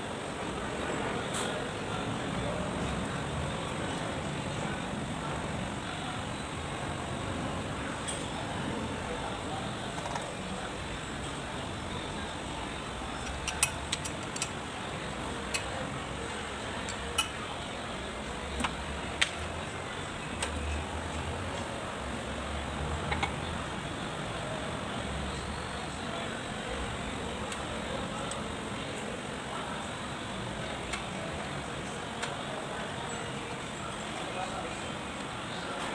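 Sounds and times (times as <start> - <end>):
steady background noise: 0.0 - 35.9.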